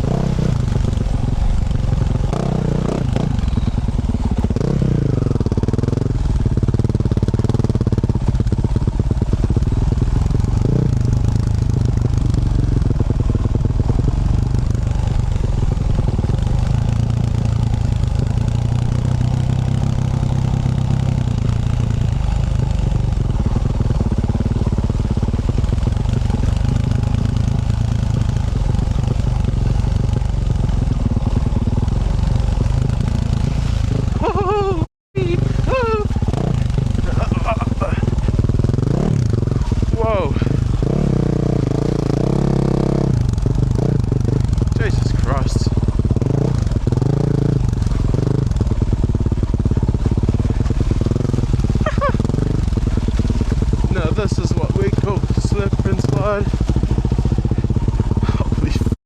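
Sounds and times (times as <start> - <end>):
dirt bike engine revving: 0.0 - 59.0.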